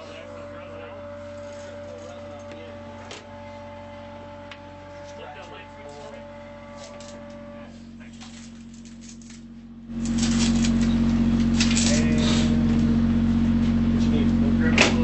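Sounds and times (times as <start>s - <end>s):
machine humming: 0.0s - 15.0s.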